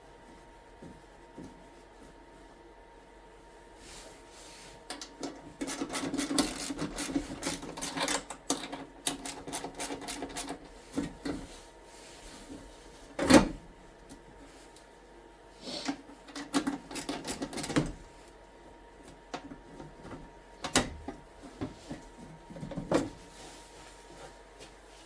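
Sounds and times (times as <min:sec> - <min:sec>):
tools rattling and scraping metal: 0:04.9 - 0:11.5, 0:16.2 - 0:18.0.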